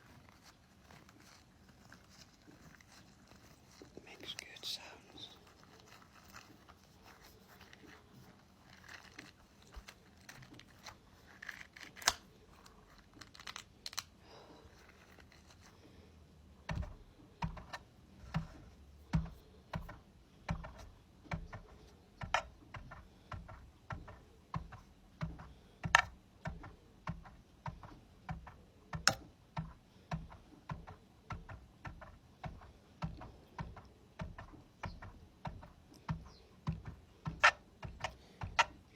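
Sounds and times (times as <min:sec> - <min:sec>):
soft taps on a ball: 0:16.6 - 0:38.9.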